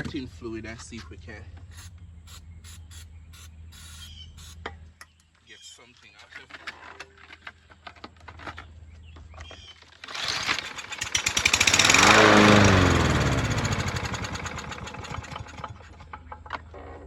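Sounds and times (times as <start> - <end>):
push mower engine firing: 9.4 - 17.0.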